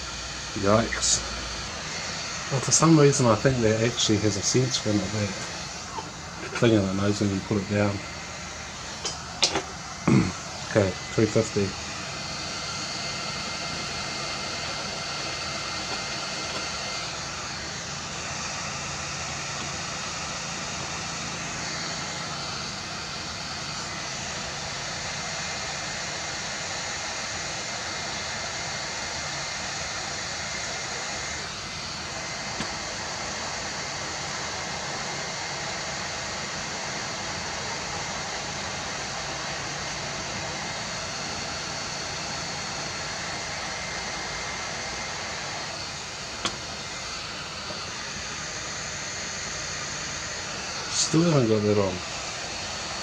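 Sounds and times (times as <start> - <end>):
hot air fan hissing with whine: 0.0 - 53.0.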